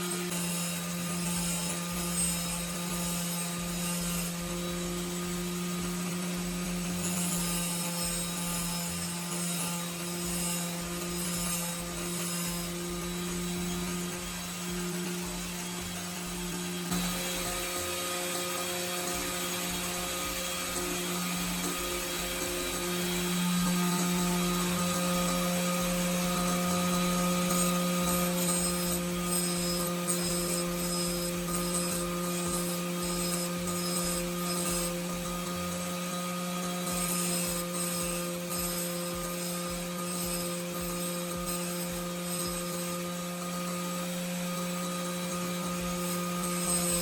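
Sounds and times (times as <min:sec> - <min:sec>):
electric power tool motor humming: 0:00.0 - 0:47.0.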